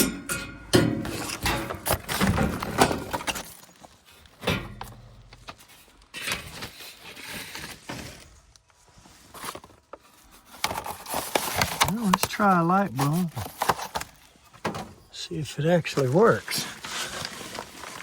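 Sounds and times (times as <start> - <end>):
scrape and rustle: 5.4 - 14.6, 15.9 - 18.0.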